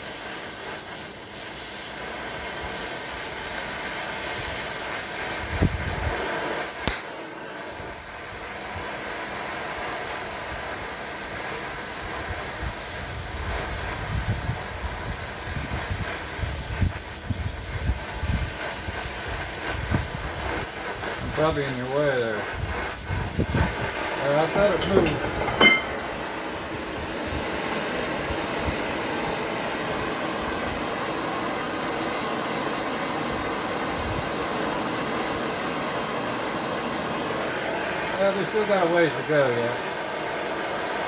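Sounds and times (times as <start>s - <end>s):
gas torch flame hissing: 0.0s - 41.0s
sharp click: 6.8s - 7.2s.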